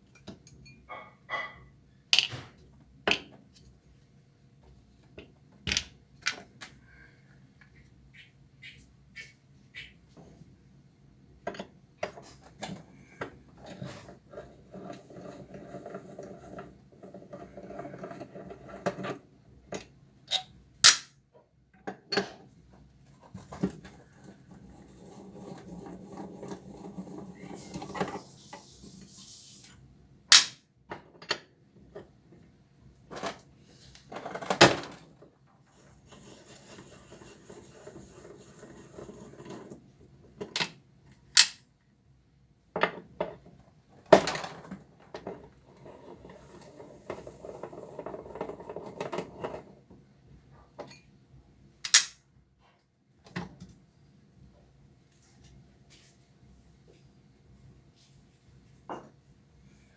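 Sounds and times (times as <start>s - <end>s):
scraping and rubbing: 35.7s - 39.7s.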